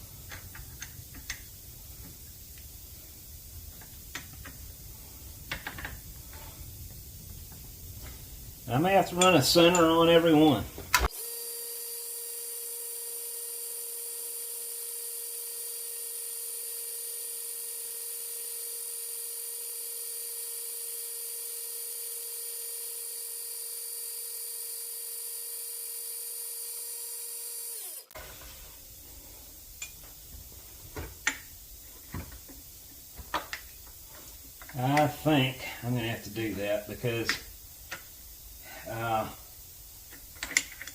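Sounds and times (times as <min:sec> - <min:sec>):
drilling machine whining: 0:08.7 - 0:29.8.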